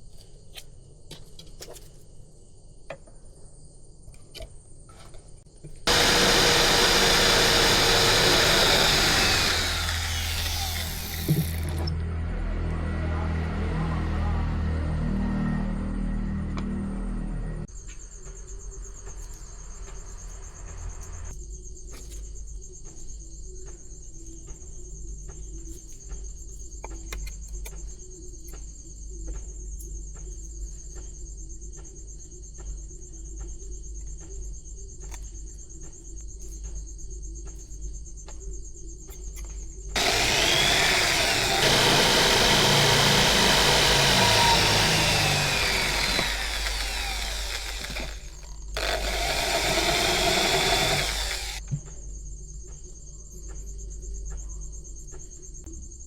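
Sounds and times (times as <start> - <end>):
steady machine hum: 5.9 - 11.9, 40.0 - 51.6
power tool running: 5.9 - 12.0, 40.0 - 51.6.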